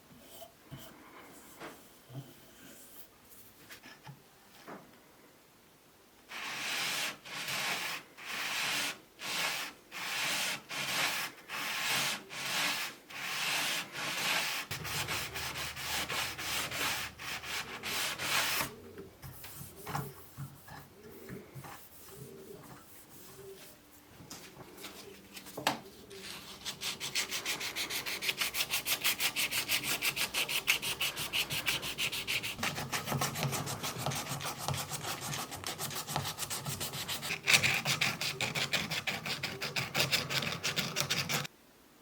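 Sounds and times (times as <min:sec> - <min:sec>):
sandpaper rubbing: 0:06.3 - 0:18.8, 0:24.8 - 0:41.5.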